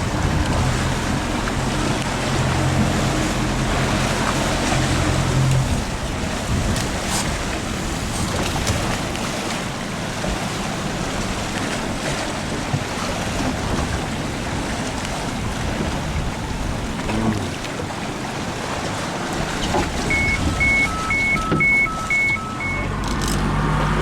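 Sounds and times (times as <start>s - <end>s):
wind buffeting microphone: 0.0s - 9.3s
sea water rushing: 0.0s - 24.0s.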